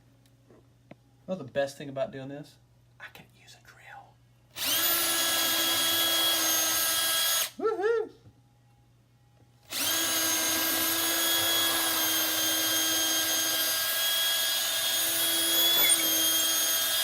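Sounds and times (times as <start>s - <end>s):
power drill running: 4.6s - 7.6s, 9.6s - 17.0s.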